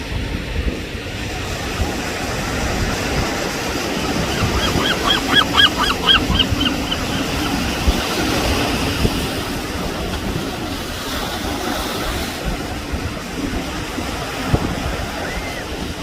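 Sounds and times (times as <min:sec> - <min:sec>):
ocean surf: 0:00.0 - 0:16.0
gull calling: 0:03.6 - 0:08.6.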